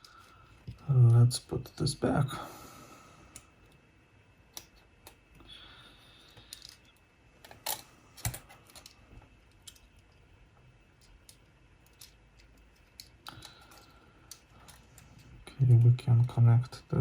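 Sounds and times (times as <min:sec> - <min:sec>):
small plastic parts clicking: 0:04.5 - 0:05.2, 0:06.3 - 0:10.3, 0:11.0 - 0:16.3.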